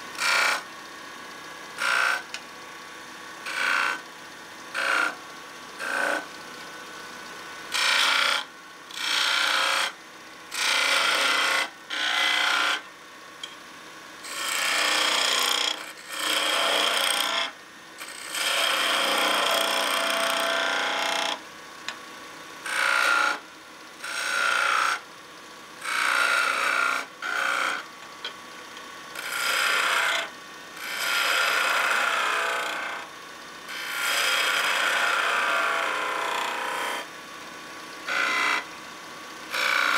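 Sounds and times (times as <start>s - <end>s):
lathe tool cutting wood: 0.2s - 0.6s, 1.8s - 2.4s, 3.4s - 4.0s, 4.7s - 5.2s, 5.8s - 6.3s, 7.7s - 9.9s, 10.5s - 12.8s, 14.2s - 21.4s, 22.6s - 23.4s, 24.0s - 25.0s, 25.8s - 27.8s, 29.2s - 33.0s, 33.7s - 37.1s, 38.1s - 38.7s, 39.5s - 39.9s.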